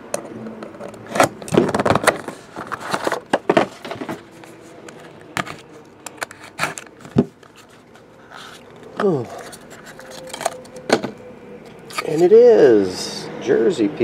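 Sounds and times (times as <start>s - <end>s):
cards scraping and rustling: 0.6s - 11.1s, 11.7s - 12.3s.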